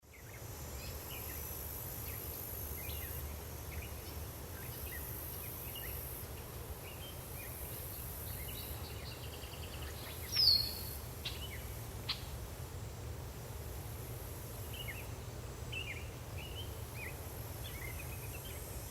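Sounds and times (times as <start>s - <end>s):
high insect drone: 0.0s - 18.9s
bird chirps: 8.4s - 12.2s.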